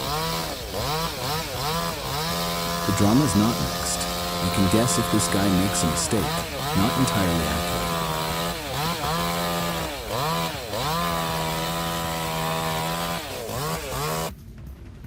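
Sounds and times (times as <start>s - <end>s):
chainsaw running at high revs: 0.0s - 14.3s.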